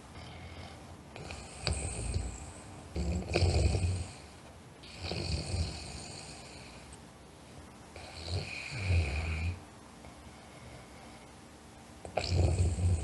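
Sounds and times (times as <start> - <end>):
person snoring: 1.2 - 6.9, 8.0 - 9.6, 12.1 - 13.0.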